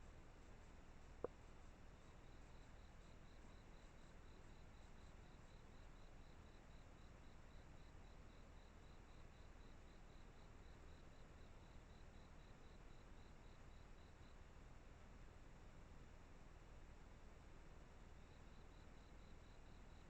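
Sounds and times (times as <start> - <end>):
background hiss: 0.0 - 20.0
insect chirping: 0.4 - 14.4, 18.1 - 20.0.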